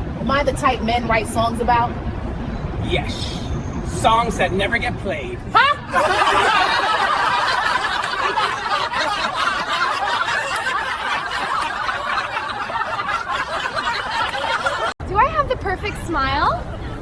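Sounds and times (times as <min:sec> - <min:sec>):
people laughing: 0:05.6 - 0:15.0, 0:15.9 - 0:17.0.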